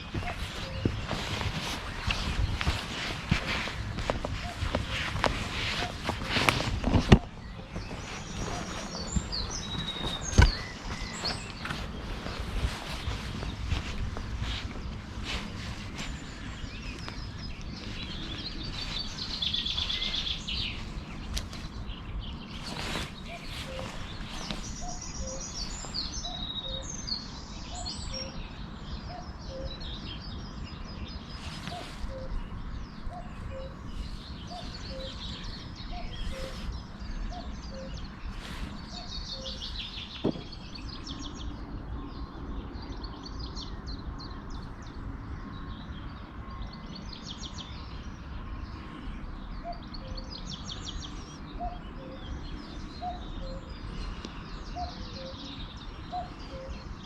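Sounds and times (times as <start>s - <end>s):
cuckoo calling: 0.0s - 21.7s, 22.6s - 27.1s, 29.0s - 29.9s, 31.4s - 40.9s, 51.0s - 57.0s
songbirds chirping: 0.0s - 57.0s
steady background noise: 0.0s - 57.0s.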